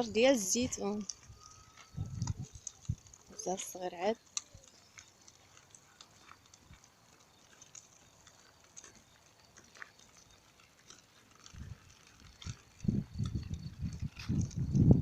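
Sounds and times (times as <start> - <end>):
faint ticks: 0.5 - 14.9.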